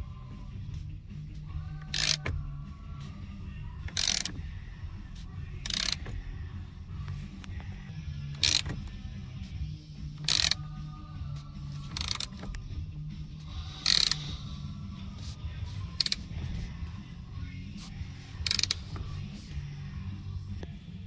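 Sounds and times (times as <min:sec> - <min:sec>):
ratchet clicking: 0:01.4 - 0:09.2, 0:10.1 - 0:10.8, 0:11.6 - 0:12.6, 0:13.4 - 0:19.9.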